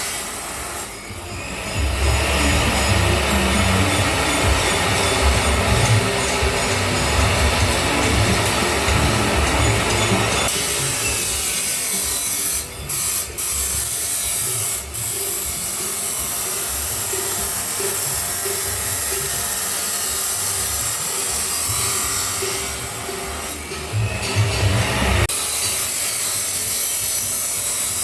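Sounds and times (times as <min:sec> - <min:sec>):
grinder cutting steel pipe: 0:00.0 - 0:28.0.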